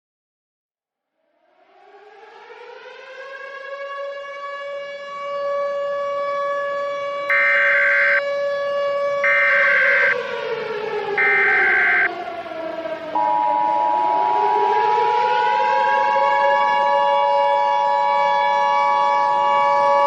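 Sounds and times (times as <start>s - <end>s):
siren wailing: 1.6s - 20.0s
data tone bursts: 7.3s - 8.2s, 11.2s - 12.1s
two-tone attention signal: 7.3s - 8.2s, 9.2s - 10.2s, 11.2s - 12.1s, 13.2s - 14.6s.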